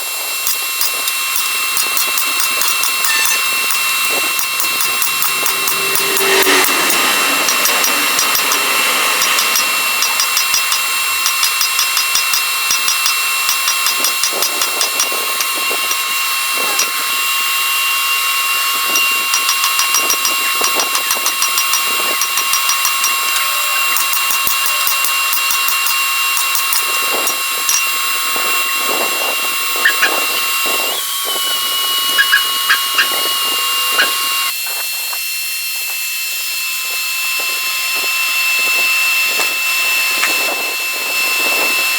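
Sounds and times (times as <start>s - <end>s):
electric grinder whining: 0.0s - 41.9s.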